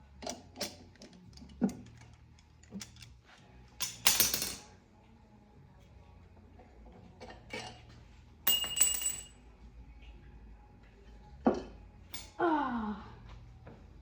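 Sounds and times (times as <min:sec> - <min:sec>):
metal tools clinking and knocking: 0:00.2 - 0:03.2, 0:03.8 - 0:04.7, 0:07.1 - 0:09.4, 0:11.5 - 0:12.4.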